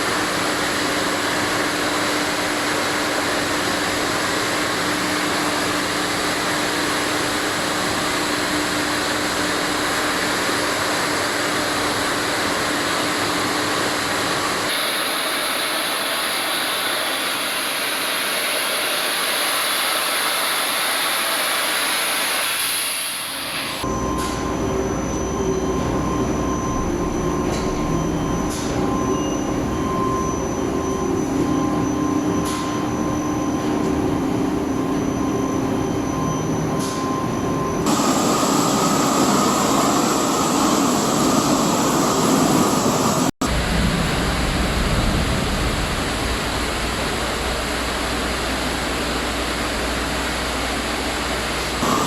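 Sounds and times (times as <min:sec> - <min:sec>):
machinery hum and whine: 0:00.0 - 0:52.0.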